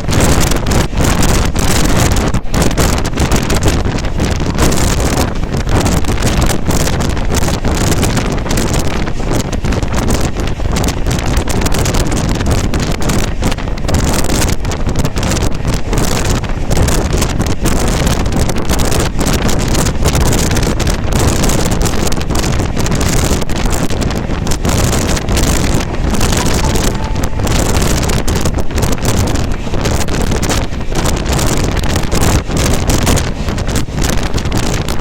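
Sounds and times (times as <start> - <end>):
train rumbling on rails: 0.0 - 35.0
wind buffeting microphone: 0.0 - 35.0.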